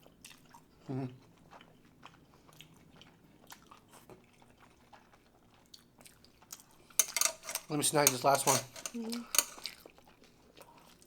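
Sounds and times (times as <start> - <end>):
chewing and mouth sounds: 0.0 - 6.8.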